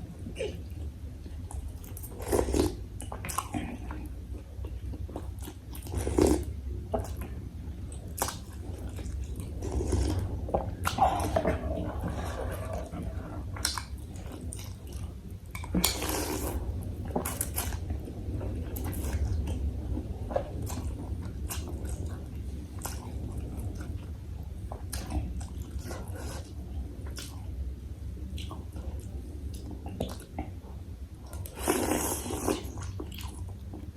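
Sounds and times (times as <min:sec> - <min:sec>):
low steady hum: 0:00.0 - 0:33.9
wet chewing and mouth clicks: 0:01.5 - 0:17.9.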